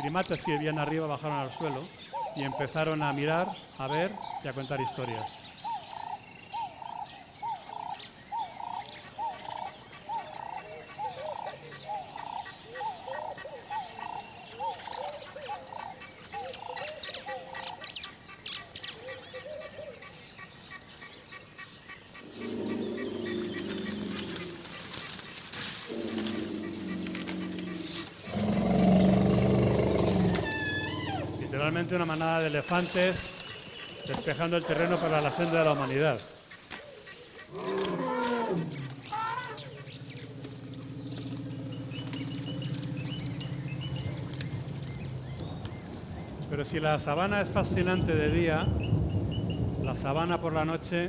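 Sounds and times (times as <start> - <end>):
birds chirping and warbling: 0.0 - 50.8
insect chorus: 0.0 - 51.0
sharp falling bird calls: 4.3 - 46.6
rising and falling animal call: 22.2 - 25.2, 25.8 - 32.4, 37.5 - 45.4
low gliding animal call: 22.2 - 32.2, 37.4 - 46.2
high-pitched insect drone: 37.6 - 45.3.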